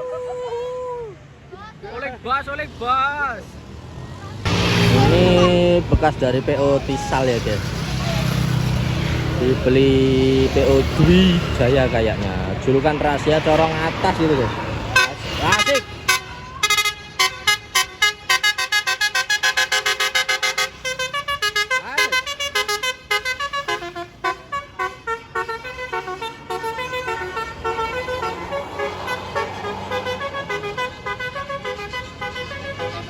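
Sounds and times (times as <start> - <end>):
bus horn playing melody: 14.9 - 33.0.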